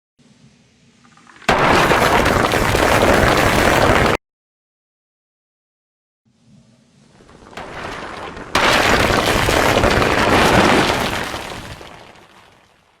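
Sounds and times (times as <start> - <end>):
cubes crashing down: 1.4 - 4.2, 7.3 - 12.2.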